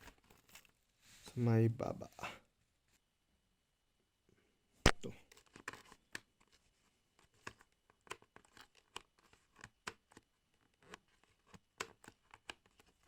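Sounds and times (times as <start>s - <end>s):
plastic helmet clicks and taps: 7.2s - 13.0s.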